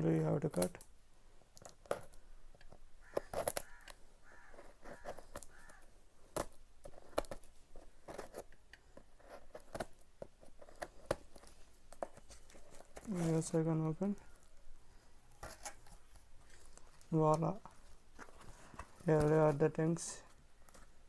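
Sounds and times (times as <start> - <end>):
blade cutting cardboard: 3.0 - 13.6.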